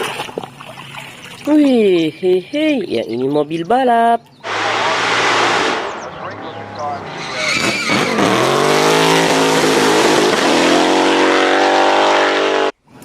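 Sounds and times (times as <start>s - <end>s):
race car engine revving: 4.4s - 12.8s.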